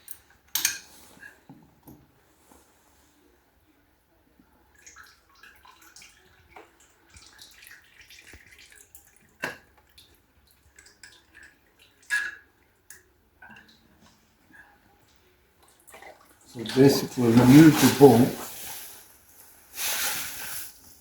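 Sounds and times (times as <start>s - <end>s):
oil dripping and trickling: 4.8s - 9.2s.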